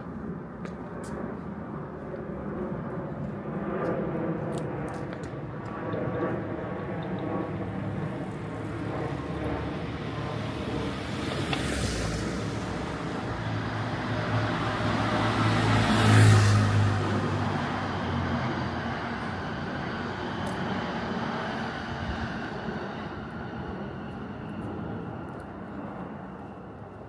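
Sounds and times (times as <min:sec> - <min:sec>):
car driving past: 0:10.9 - 0:19.4.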